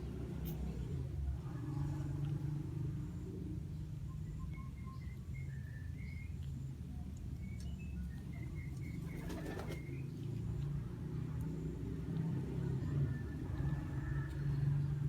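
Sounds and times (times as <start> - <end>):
faint bird chirps: 3.7 - 10.4
pigeon wings flapping: 9.0 - 9.9.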